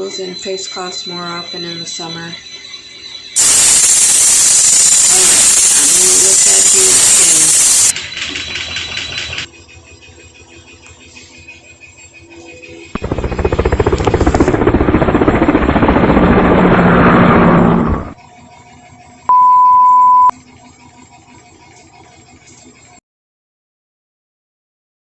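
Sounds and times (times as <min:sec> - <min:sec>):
electronic beep: 0:00.1 - 0:09.5, 0:19.3 - 0:20.3
washing machine motor rattling: 0:13.0 - 0:18.2.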